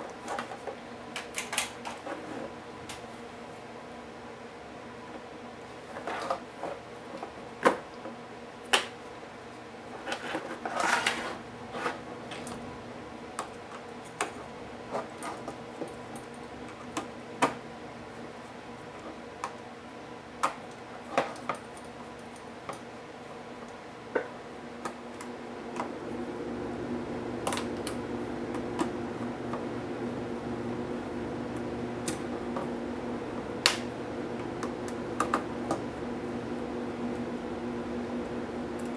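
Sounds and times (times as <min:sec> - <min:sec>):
steady hum: 0:25.2 - 0:38.9.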